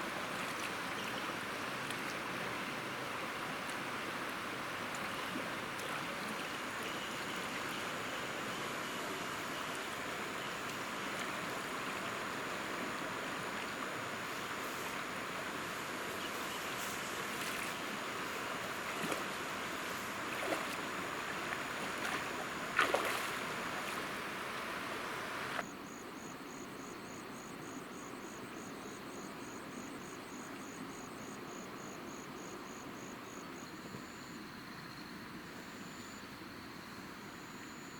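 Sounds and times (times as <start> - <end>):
stream water running: 0.0 - 25.7.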